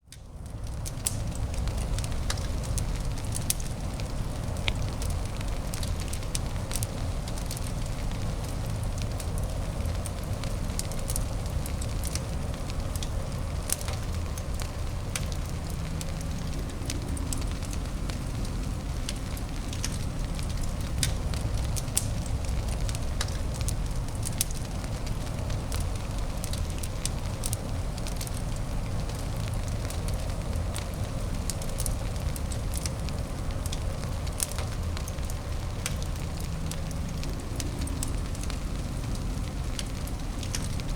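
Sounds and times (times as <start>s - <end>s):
fire crackling and popping: 0.1s - 40.9s.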